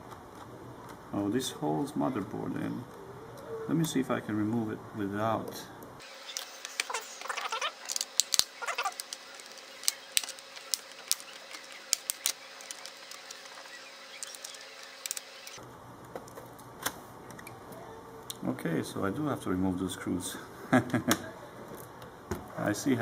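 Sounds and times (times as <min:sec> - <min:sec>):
short squeaks: 0:06.1 - 0:15.6
plastic parts clicking and creaking: 0:06.3 - 0:17.5.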